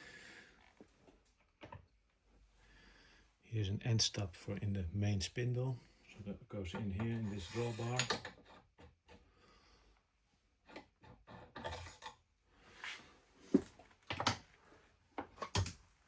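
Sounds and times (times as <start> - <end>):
metal parts rubbing: 7.2 - 8.1.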